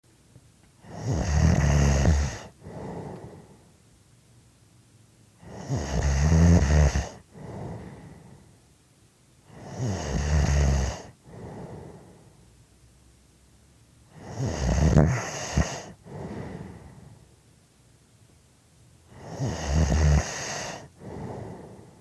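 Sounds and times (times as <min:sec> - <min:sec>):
person snoring: 0:00.8 - 0:03.5, 0:05.4 - 0:08.1, 0:09.5 - 0:12.1, 0:14.1 - 0:17.0, 0:19.1 - 0:22.0.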